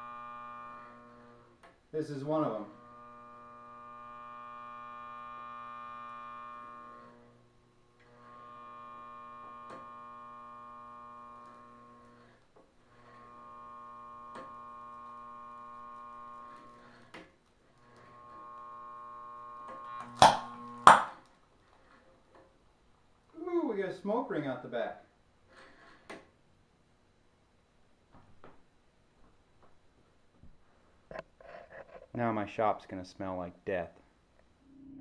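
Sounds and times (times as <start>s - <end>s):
stalled sander motor humming: 0.0s - 1.5s, 2.4s - 17.1s, 17.8s - 21.0s.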